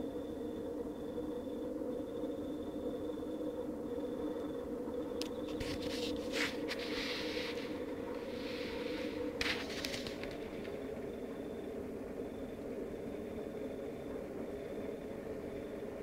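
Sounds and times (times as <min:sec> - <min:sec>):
faint high whine: 0:00.0 - 0:16.0
low droning hum: 0:00.0 - 0:16.0
rustling scraping and clicking: 0:05.5 - 0:10.8.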